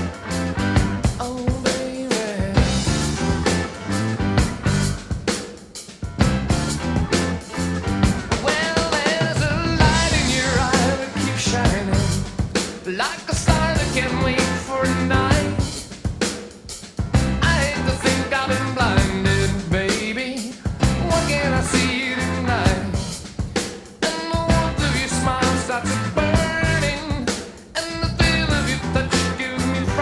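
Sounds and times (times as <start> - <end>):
rock music with drums bass guitar: 0.0 - 30.0
person singing: 1.2 - 2.9, 8.3 - 12.3, 12.9 - 15.8, 17.4 - 23.2, 24.0 - 30.0.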